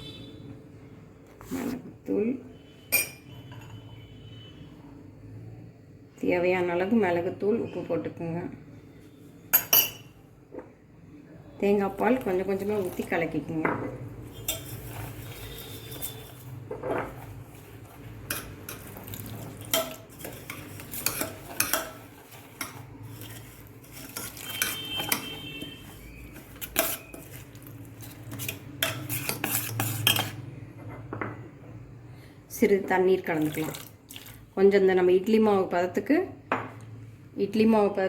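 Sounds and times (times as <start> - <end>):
spoon clinking and scraping bowl: 2.9 - 4.0, 9.5 - 10.2, 12.0 - 31.1.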